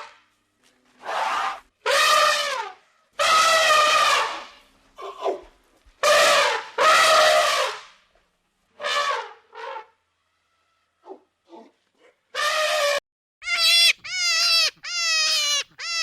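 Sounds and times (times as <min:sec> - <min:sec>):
animal calling with nasal cries: 0:12.4 - 0:16.0.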